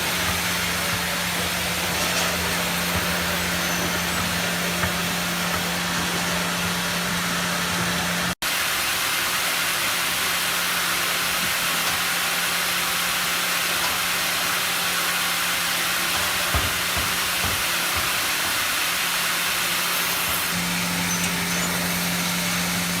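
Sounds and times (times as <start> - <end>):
sawmill machinery rushing: 0.0 - 23.0.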